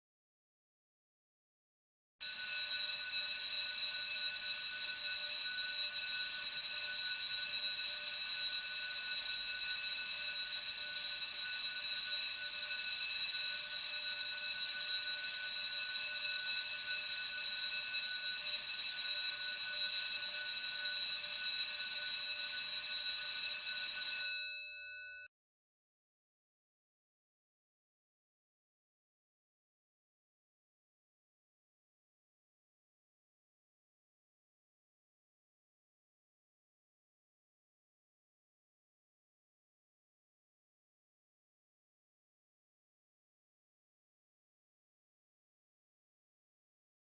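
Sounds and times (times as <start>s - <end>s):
electric school bell ringing: 2.2s - 7.3s, 19.7s - 25.2s.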